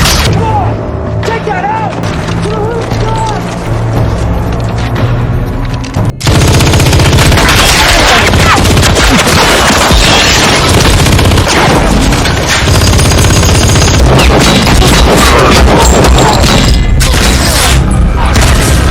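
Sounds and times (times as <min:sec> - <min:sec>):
automatic gunfire: 0:06.2 - 0:16.7.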